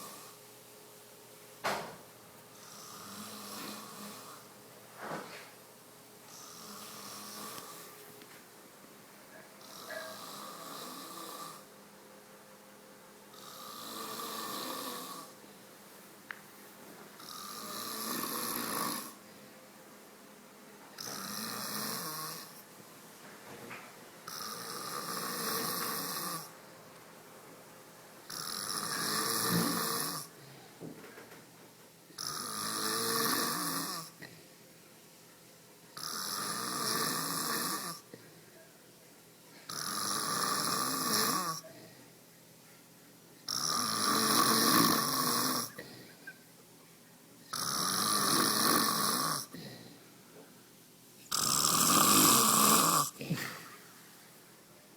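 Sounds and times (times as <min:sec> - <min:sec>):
quiet breaths: 0:00.0 - 0:01.0, 0:02.4 - 0:05.6, 0:06.2 - 0:11.9, 0:13.2 - 0:20.0, 0:28.2 - 0:54.9
man snoring: 0:02.6 - 0:04.5, 0:06.3 - 0:07.9, 0:09.6 - 0:11.7, 0:13.3 - 0:15.4, 0:17.2 - 0:19.2, 0:21.0 - 0:22.6, 0:24.3 - 0:26.5, 0:28.3 - 0:30.4, 0:32.2 - 0:34.3, 0:36.0 - 0:38.1, 0:39.7 - 0:41.6, 0:43.5 - 0:45.9, 0:47.5 - 0:50.0, 0:51.3 - 0:53.7.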